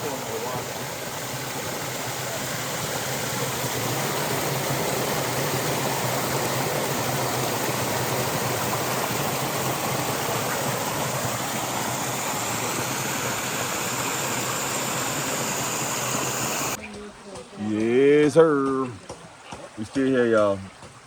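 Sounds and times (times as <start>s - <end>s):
river water flowing over rocks: 0.0s - 16.8s.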